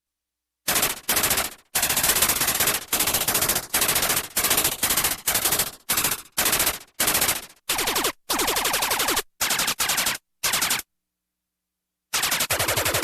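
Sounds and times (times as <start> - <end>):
synthesized energy weapon bursts: 7.7 - 10.8, 12.2 - 13.0.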